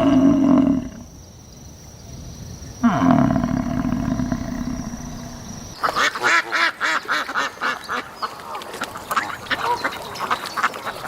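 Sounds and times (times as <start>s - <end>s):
ducks quacking: 5.8s - 11.0s.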